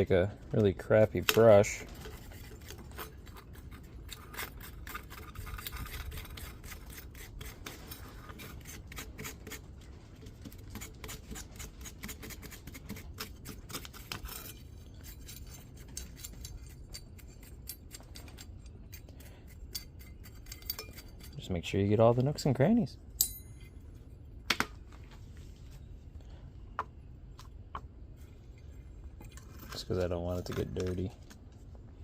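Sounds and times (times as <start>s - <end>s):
brush scrubbing metal: 1.5s - 18.7s.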